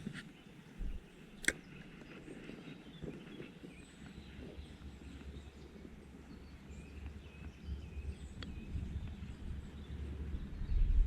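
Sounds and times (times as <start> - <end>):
sharp click: 0.8 - 1.6.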